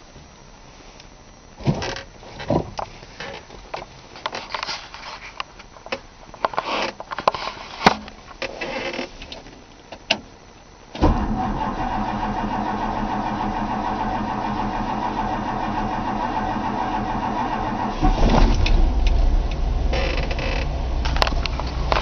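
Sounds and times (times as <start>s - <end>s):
car engine starting and running: 11.0s - 22.0s.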